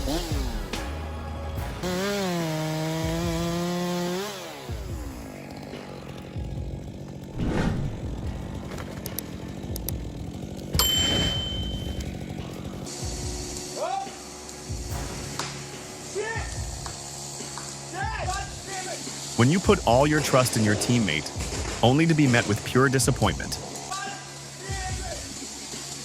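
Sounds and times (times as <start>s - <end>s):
chainsaw running: 0.0s - 26.0s
high ringing tone: 10.8s - 12.1s.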